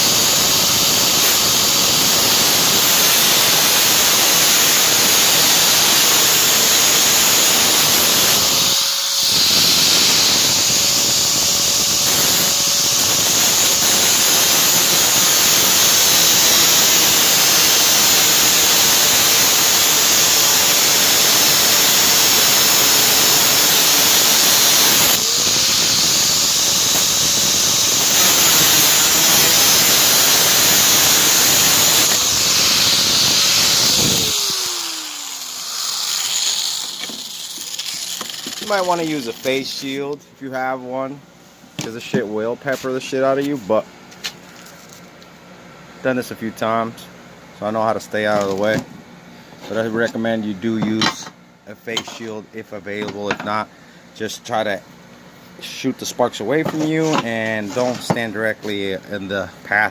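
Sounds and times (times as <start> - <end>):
angle grinder cutting metal: 0.0 - 40.2, 56.6 - 58.3.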